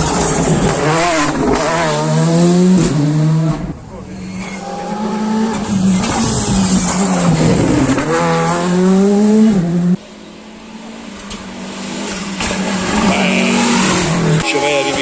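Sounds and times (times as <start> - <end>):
car approaching: 0.0 - 15.0
rally car engine at full throttle: 0.0 - 15.0.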